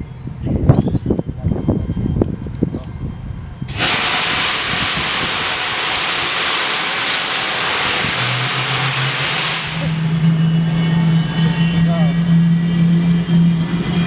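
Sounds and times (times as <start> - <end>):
low engine hum: 0.0 - 14.0
jet engine starter hissing: 3.7 - 10.1.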